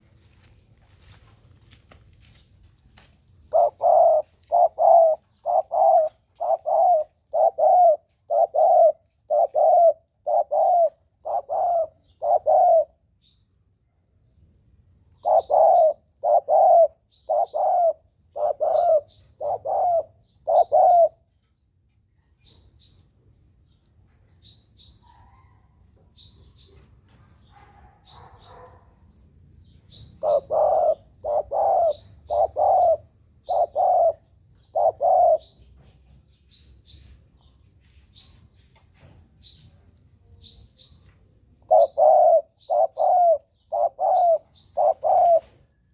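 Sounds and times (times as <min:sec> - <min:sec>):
dove cooing: 0:03.4 - 0:13.0, 0:15.2 - 0:21.3, 0:29.9 - 0:35.8, 0:40.5 - 0:45.8.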